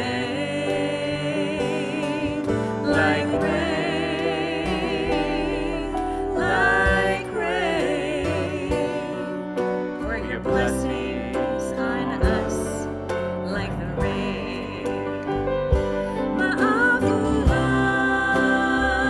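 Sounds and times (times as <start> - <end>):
band playing slow song: 0.0 - 19.0
person singing with vibrato: 0.0 - 19.0.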